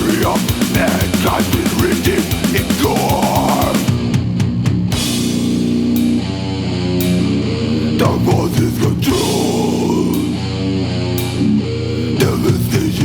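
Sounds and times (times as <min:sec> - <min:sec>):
fast drumming: 0:00.0 - 0:05.6, 0:08.0 - 0:10.3, 0:12.2 - 0:13.0
death metal band playing: 0:00.0 - 0:13.0.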